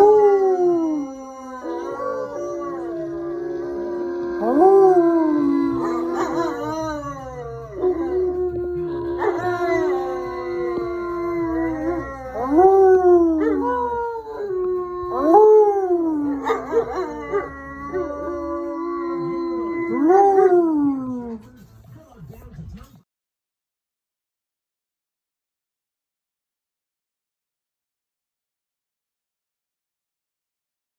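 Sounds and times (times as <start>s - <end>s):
dog howling: 0.0s - 21.4s.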